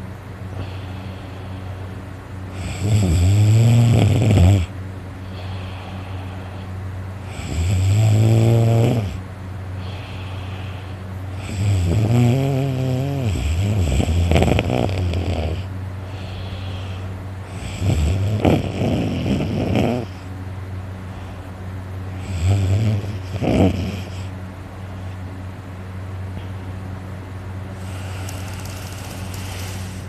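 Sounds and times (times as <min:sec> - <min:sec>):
steady low hum: 0:00.0 - 0:30.0
person snoring heavily: 0:02.5 - 0:04.7, 0:07.2 - 0:09.2, 0:09.8 - 0:20.2, 0:22.2 - 0:24.3, 0:27.8 - 0:30.0.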